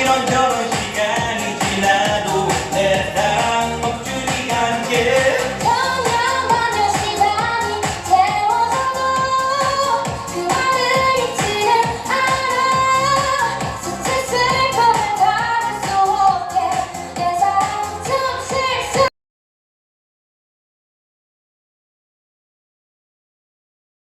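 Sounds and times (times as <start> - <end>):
person singing: 0.0 - 19.1
pop song dance beat: 0.0 - 19.1.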